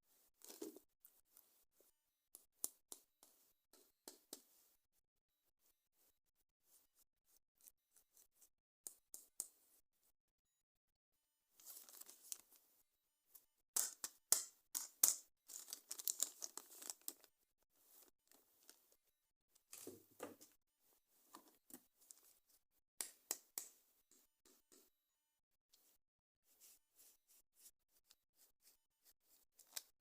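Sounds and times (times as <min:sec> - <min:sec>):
plastic and cardboard crinkling: 0:11.6 - 0:12.4, 0:15.5 - 0:17.3.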